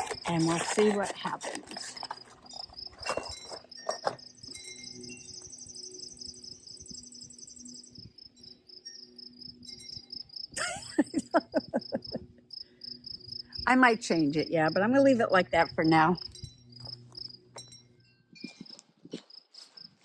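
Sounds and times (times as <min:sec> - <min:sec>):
higher insect trill: 0:02.0 - 0:15.2
insects chirping in a pulsed trill: 0:02.1 - 0:20.0.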